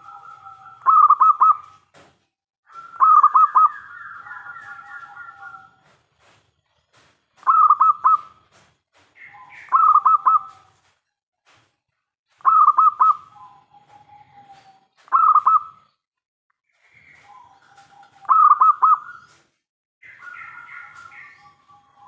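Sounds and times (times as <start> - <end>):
dove cooing: 0.0 - 1.7, 2.7 - 5.9, 9.6 - 10.7, 12.4 - 15.8, 17.1 - 19.2.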